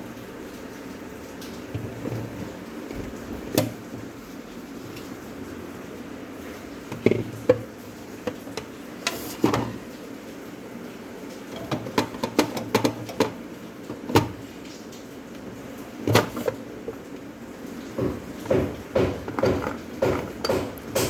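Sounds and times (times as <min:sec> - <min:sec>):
food containers clinking and knocking: 0:06.9 - 0:09.8, 0:11.5 - 0:14.4, 0:17.9 - 0:21.0.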